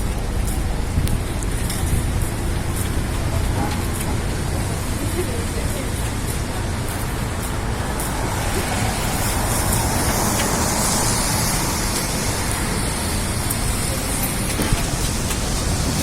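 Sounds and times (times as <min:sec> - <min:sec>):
traffic on wet street: 0:00.0 - 0:16.0
rain hiss: 0:07.9 - 0:16.0.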